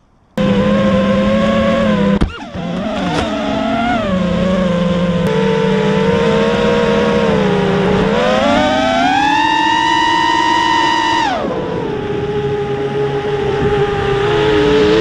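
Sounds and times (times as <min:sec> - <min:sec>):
quadcopter motors whining: 0:00.4 - 0:15.0.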